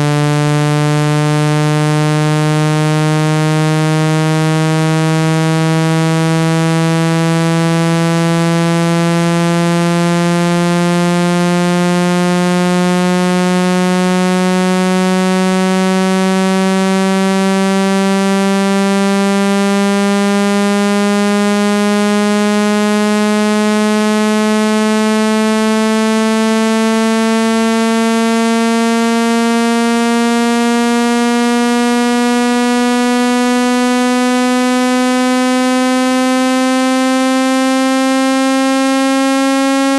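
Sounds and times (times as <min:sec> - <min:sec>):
buzzy tone rising in pitch: 0:00.0 - 0:39.9.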